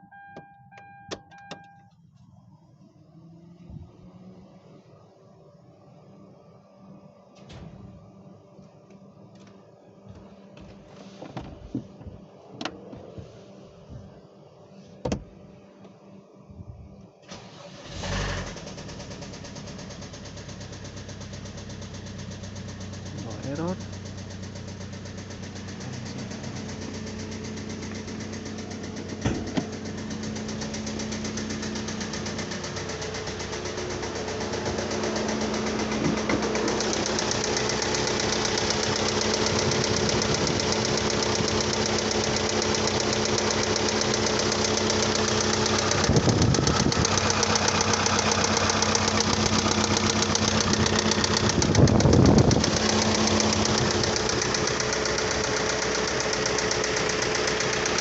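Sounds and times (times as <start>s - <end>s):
car engine idling with knock: 8.7s - 14.1s, 15.0s - 16.0s, 18.8s - 58.0s.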